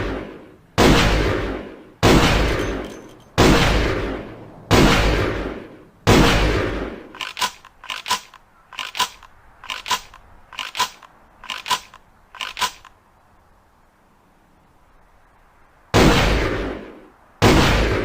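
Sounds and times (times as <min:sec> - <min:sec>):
shotgun slide racking: 0:07.2 - 0:12.9.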